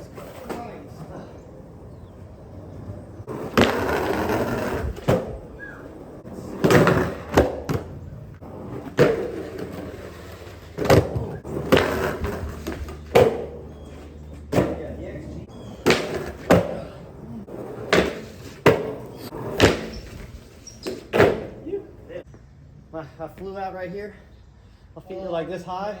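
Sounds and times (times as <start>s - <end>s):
skateboard wheels rolling: 0.0s - 22.3s
skateboard clacks: 2.7s - 21.6s.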